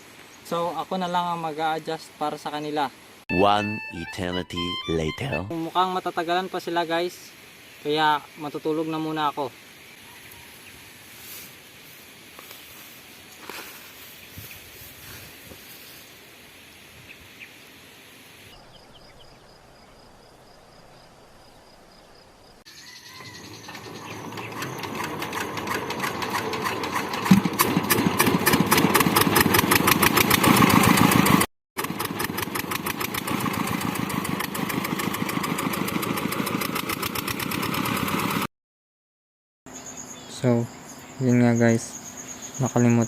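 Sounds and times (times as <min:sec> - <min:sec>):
faint outdoor ambience: 0:00.0 - 0:25.3, 0:39.7 - 0:43.0
thresher engine running: 0:23.4 - 0:38.5.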